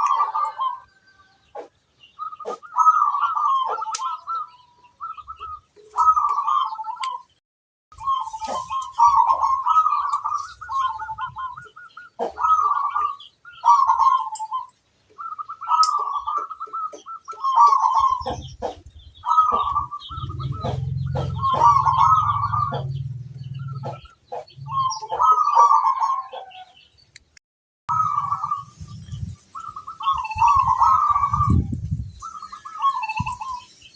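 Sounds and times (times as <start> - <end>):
dove cooing: 0.0 - 7.2, 8.0 - 26.8, 27.9 - 33.7
low hum: 20.1 - 24.9.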